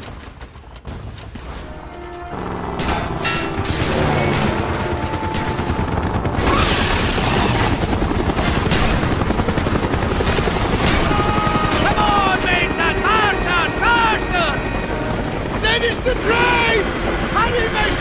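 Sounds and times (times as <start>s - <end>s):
continuous rumble: 0.0s - 18.0s
music: 0.8s - 6.5s.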